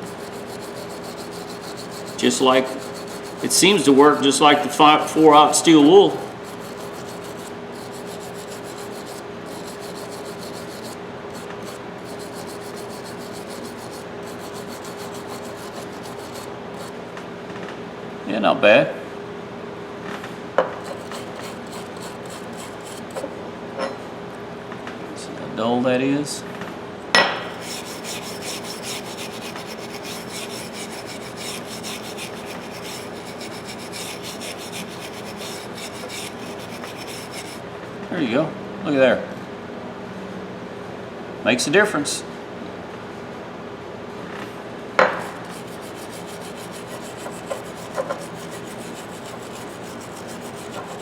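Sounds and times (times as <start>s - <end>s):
wire brush scrubbing rusted steel: 0.0s - 17.1s, 20.8s - 23.4s, 27.5s - 37.6s, 45.1s - 51.0s.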